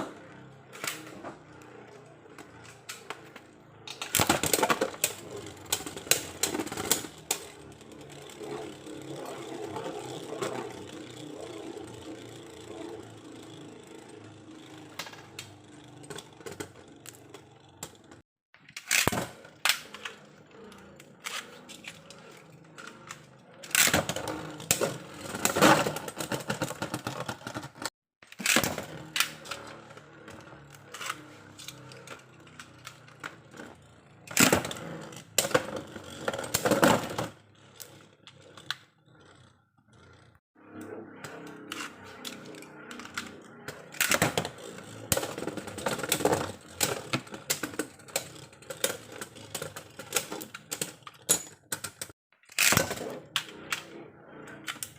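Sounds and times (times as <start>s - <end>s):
small plastic parts clattering: 2.5s - 7.6s.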